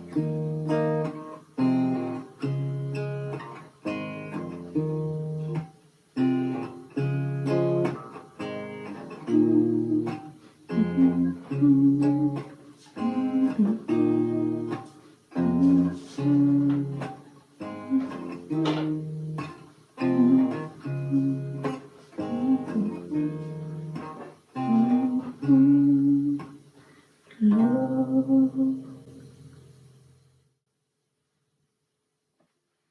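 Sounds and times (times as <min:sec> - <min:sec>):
acoustic guitar strumming: 0:00.0 - 0:27.0.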